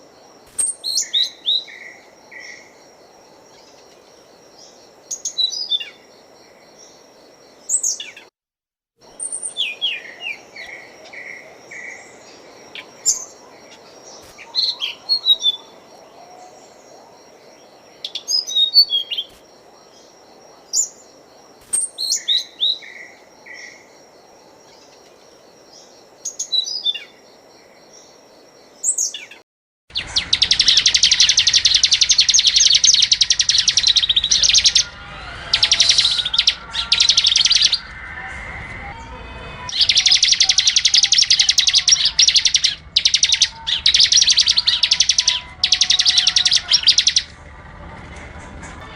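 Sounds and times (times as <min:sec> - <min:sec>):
songbirds chirping: 0:00.0 - 0:08.3, 0:09.0 - 0:48.9
loud fast bird trill: 0:29.9 - 0:38.2, 0:39.7 - 0:47.4
steady high-pitched tone: 0:30.0 - 0:48.9.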